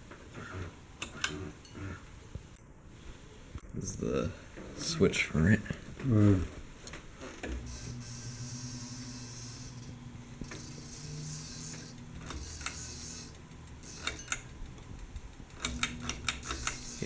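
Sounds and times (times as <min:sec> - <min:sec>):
ceiling fan motor buzzing: 0:06.0 - 0:17.0.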